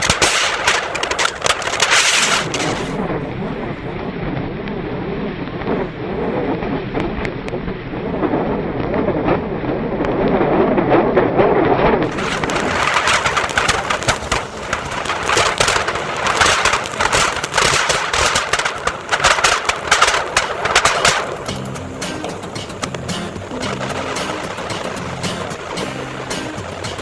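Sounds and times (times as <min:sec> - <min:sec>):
fountain fireworks hissing and crackling: 0:00.0 - 0:03.8, 0:12.0 - 0:27.0.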